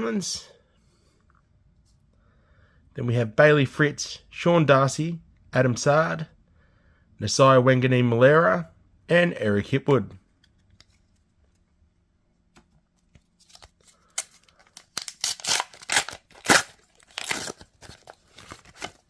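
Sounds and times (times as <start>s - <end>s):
wrapper tearing and crinkling: 13.4s - 19.0s.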